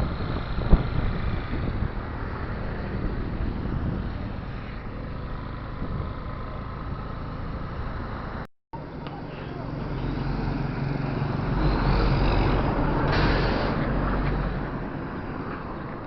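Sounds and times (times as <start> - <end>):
wind rush on microphone: 0.0 - 4.9, 5.7 - 6.3
motor scooter engine and road noise: 0.0 - 16.0.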